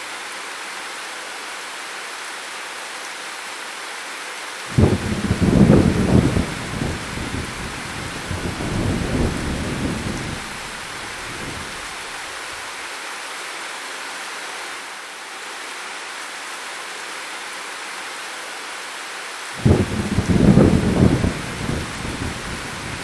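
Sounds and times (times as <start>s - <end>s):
heavy rain: 4.6s - 12.9s, 19.3s - 23.0s
rolling thunder: 4.7s - 12.1s, 19.6s - 23.0s.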